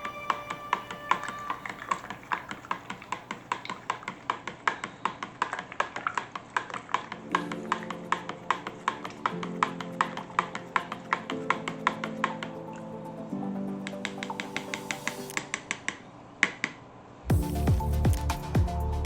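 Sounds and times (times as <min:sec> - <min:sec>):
background music: 0:00.0 - 0:03.6, 0:07.1 - 0:15.9, 0:17.3 - 0:19.0.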